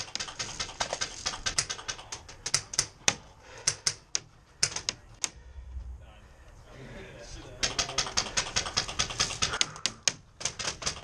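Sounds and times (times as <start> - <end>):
airsoft guns shooting: 7.6 - 11.0.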